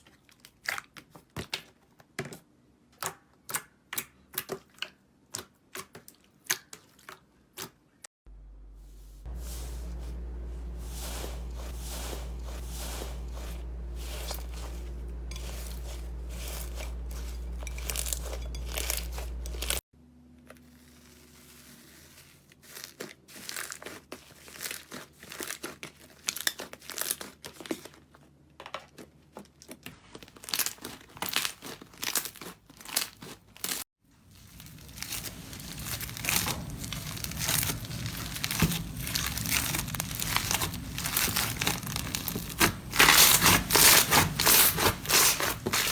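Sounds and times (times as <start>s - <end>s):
steady low hum: 8.3s - 19.8s
slime crackling and tearing: 20.6s - 28.0s, 30.2s - 45.9s.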